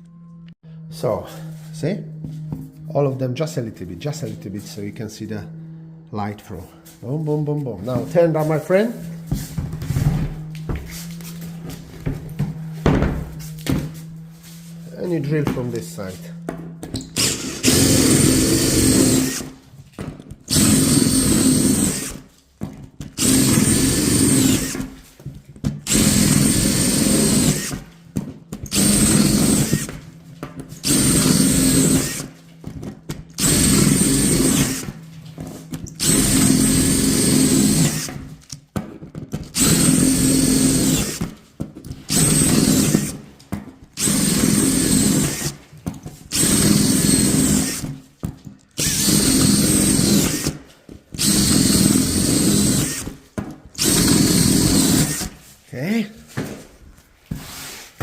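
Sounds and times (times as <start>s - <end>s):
power drill drilling: 14.9s - 19.6s, 20.5s - 22.2s, 23.1s - 25.0s, 25.8s - 27.8s, 28.7s - 30.0s, 30.8s - 32.4s, 33.4s - 35.0s, 35.9s - 38.6s, 39.6s - 41.3s, 42.1s - 43.2s, 43.9s - 45.6s, 46.3s - 48.0s, 48.8s - 50.6s, 51.2s - 53.2s, 53.8s - 55.4s.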